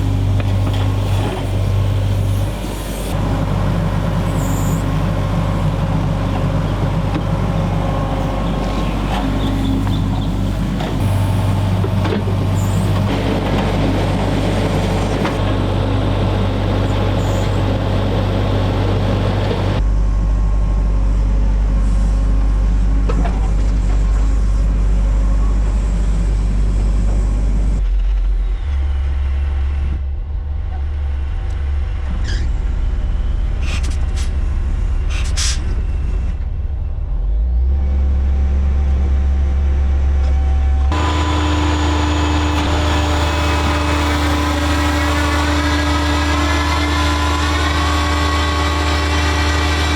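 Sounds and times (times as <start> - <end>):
digging machine engine running: 0.0 - 19.8, 40.7 - 49.9.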